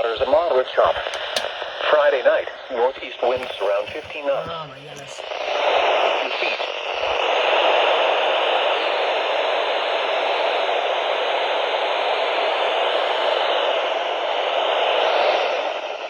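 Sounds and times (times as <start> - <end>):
radio static hiss: 0.0 - 16.0.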